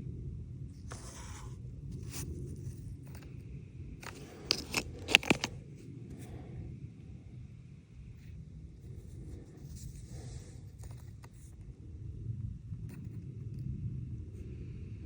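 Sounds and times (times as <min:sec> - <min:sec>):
stones scraping and rustling: 0:04.0 - 0:05.6.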